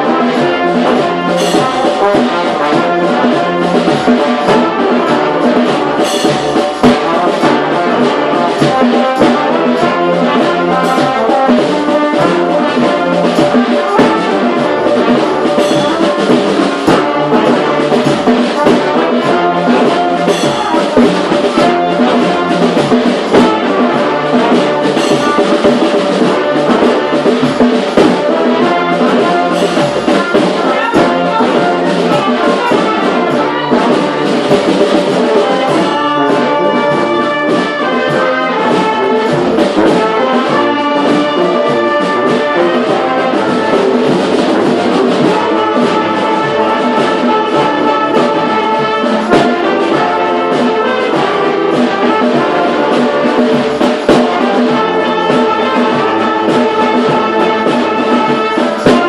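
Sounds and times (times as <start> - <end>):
brass band playing: 0.0 - 59.0.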